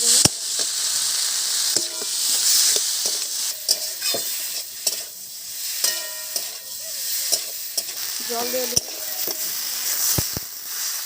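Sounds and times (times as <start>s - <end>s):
potatoes sizzling in hot oil: 0.0s - 11.0s
spatula scraping a pan: 1.7s - 10.2s
short metallic rings: 5.8s - 6.8s.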